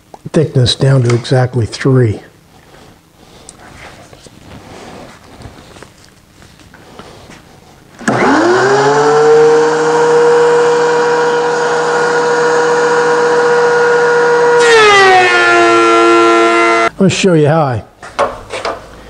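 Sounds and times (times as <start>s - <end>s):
planer motor whine: 8.0s - 16.9s.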